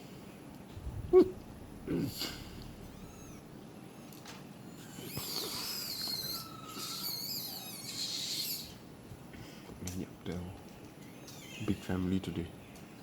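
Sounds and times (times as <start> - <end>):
high warbled bird calls: 4.8 - 8.8, 11.0 - 12.1.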